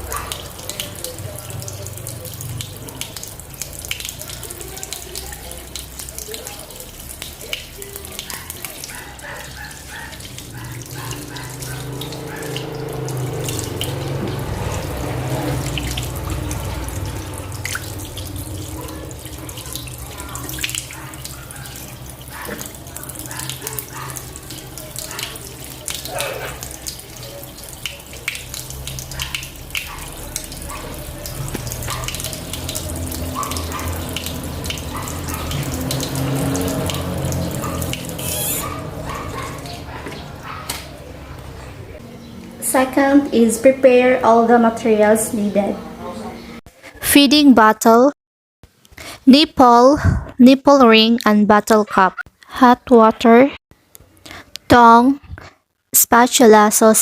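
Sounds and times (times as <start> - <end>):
tap water running into sink: 0.0 - 41.5
hands washing under water: 0.0 - 41.6.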